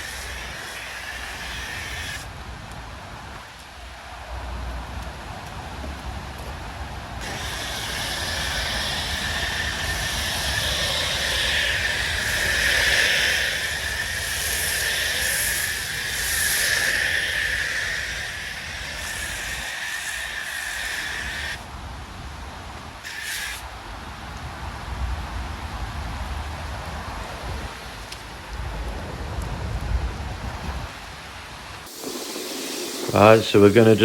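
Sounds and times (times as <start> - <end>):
foam lance spraying hiss: 0.0 - 2.3, 7.2 - 21.6, 23.0 - 23.7, 31.8 - 34.0.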